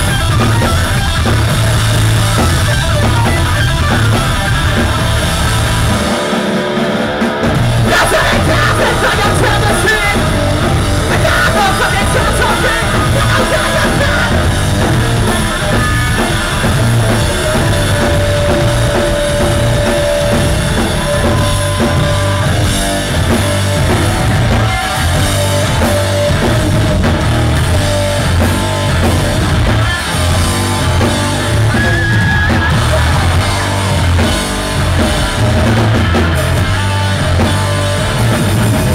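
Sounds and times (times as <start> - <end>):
distorted electric guitar: 0.0 - 38.9
drum kit: 0.0 - 38.9
person yelling vocals: 7.8 - 10.4, 11.0 - 14.6.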